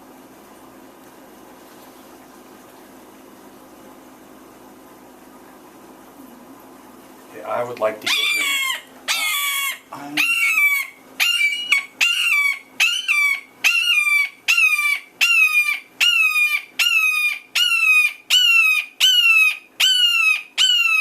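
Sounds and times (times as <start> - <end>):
hawk screaming call: 8.1 - 21.0.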